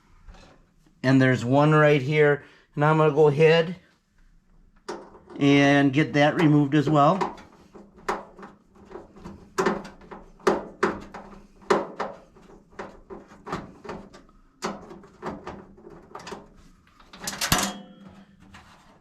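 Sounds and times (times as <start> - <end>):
screwdriver clicks and knocks on metal: 4.8 - 5.4.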